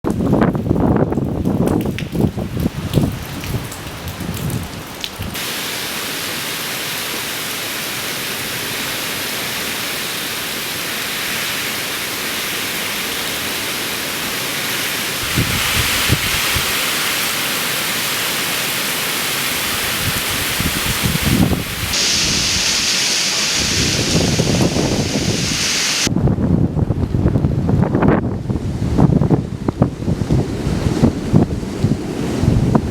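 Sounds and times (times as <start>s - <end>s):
wind gusts buffeting microphone: 0.1s - 5.4s, 15.2s - 16.8s, 19.6s - 32.9s
heavy rain falling: 0.2s - 26.1s.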